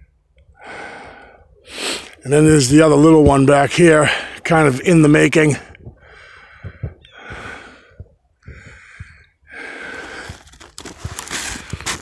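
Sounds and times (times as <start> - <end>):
snowshoe footsteps crunching snow: 9.9 - 12.0.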